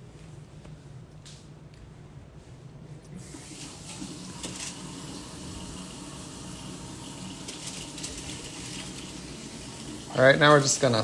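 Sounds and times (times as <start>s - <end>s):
tap running: 3.2s - 11.0s.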